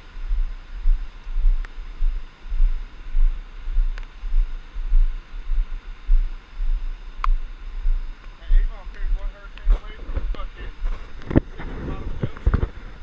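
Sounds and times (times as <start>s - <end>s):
wind buffeting microphone: 9.1s - 13.0s.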